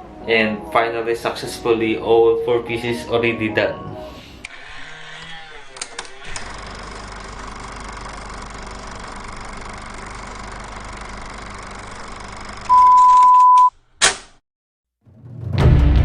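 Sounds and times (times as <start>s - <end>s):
high-pitched electronic beep: 12.7s - 13.7s.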